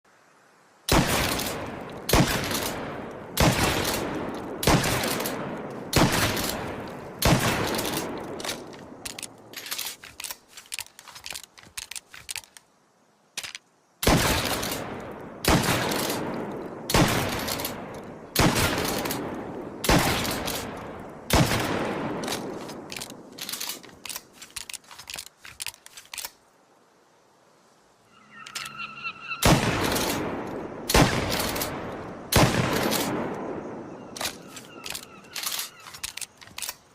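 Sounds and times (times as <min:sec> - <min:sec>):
shotgun blasts echoing: 0:00.9 - 0:09.0, 0:14.0 - 0:23.0, 0:29.4 - 0:35.4
quiet clicks: 0:34.2 - 0:36.9.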